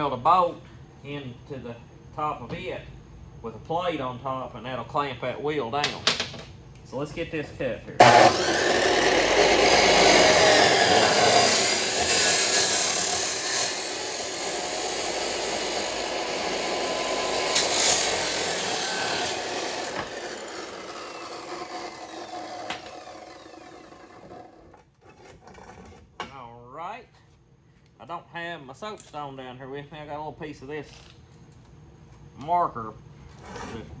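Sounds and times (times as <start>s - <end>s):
chop saw cutting metal tubing: 8.0s - 24.6s.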